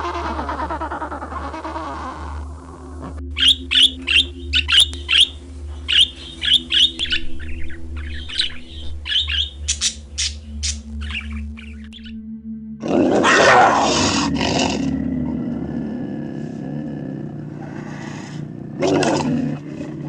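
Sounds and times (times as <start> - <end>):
steady low hum: 0.0 - 13.3
bird giving sharp calls: 3.4 - 12.1.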